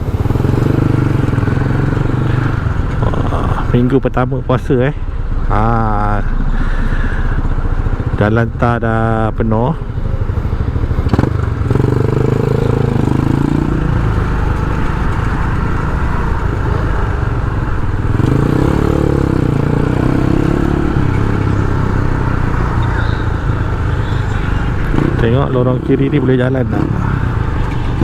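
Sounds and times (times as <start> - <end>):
motorcycle engine revving: 0.0 - 4.1, 9.8 - 28.0.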